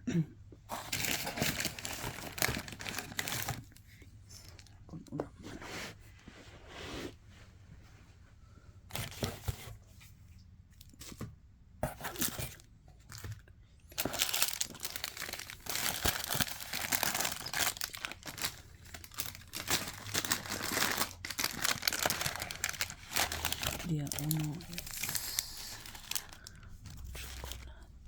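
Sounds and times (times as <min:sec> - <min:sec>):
packaging tearing and crinkling: 0:00.8 - 0:03.8, 0:13.9 - 0:27.7.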